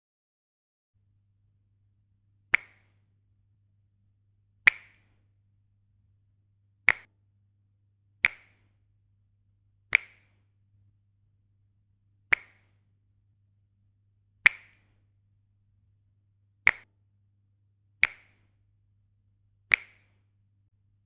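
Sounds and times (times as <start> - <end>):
finger snaps: 2.5 - 3.1, 4.7 - 5.2, 6.8 - 7.1, 8.2 - 8.8, 9.9 - 10.5, 12.3 - 12.8, 14.4 - 15.0, 16.6 - 16.9, 18.0 - 18.6, 19.7 - 20.3.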